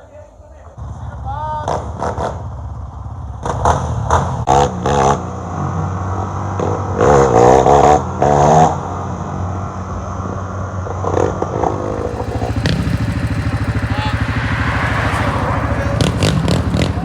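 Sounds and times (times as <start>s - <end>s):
pulsing engine: 11.4s - 17.0s
vehicle engine running: 11.4s - 17.0s
voices: 11.6s - 17.0s.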